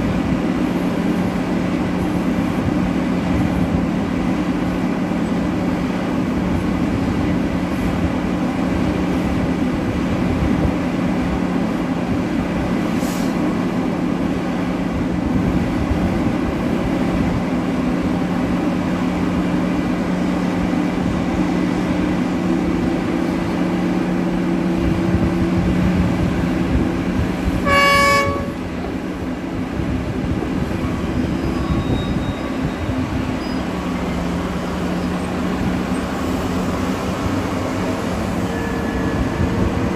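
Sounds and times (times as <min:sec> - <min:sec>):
heavy diesel machinery running: 0:00.0 - 0:39.9
horn blast: 0:27.6 - 0:28.6.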